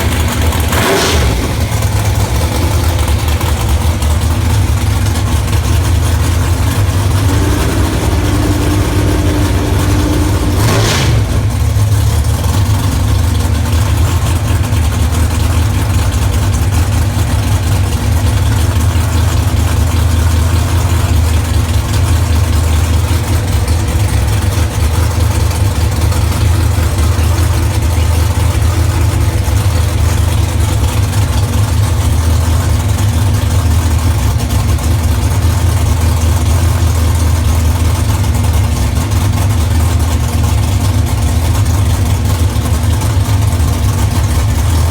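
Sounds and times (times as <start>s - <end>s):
vee eight engine idling loudly: 0.0s - 44.9s
sharp crack: 6.6s - 12.8s.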